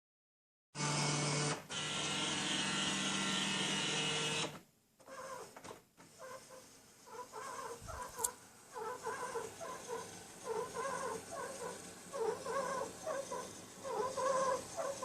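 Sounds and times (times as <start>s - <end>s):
scanner chirping squeaks: 6.2s - 15.0s.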